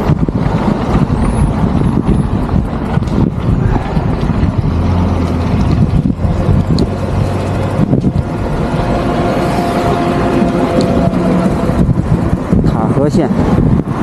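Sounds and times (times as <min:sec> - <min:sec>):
road noise rumble: 0:00.0 - 0:14.0
vehicle engine running: 0:00.0 - 0:14.0
low hum: 0:03.0 - 0:13.0.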